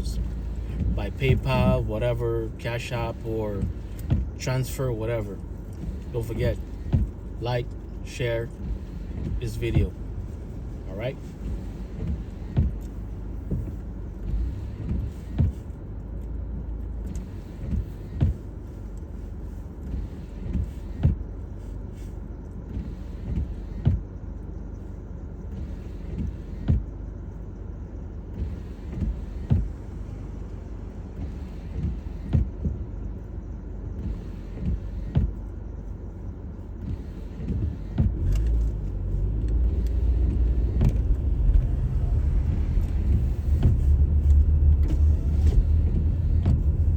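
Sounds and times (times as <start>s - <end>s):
engine and tyres rumbling: 0.0s - 46.9s
dull thumps: 5.7s - 7.7s, 8.5s - 15.6s, 33.9s - 35.5s, 36.8s - 46.9s.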